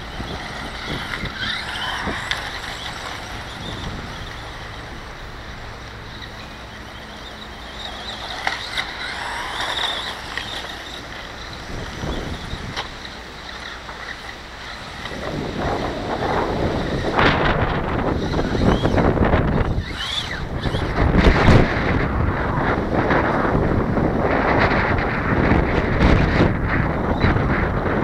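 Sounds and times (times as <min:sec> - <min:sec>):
toy car electric motor whining: 0:00.0 - 0:22.0
wind buffeting microphone: 0:00.0 - 0:28.0.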